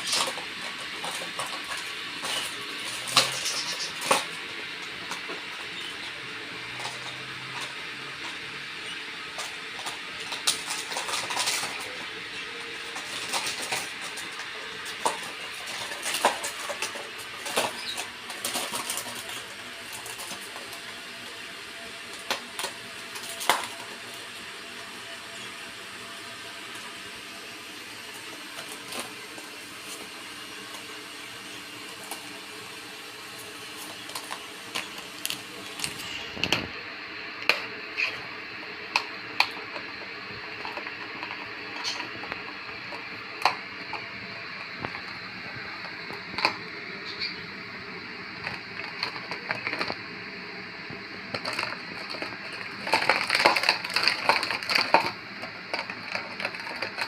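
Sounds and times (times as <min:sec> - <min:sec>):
birds squawking: 0:01.4 - 0:04.7, 0:46.9 - 0:47.6.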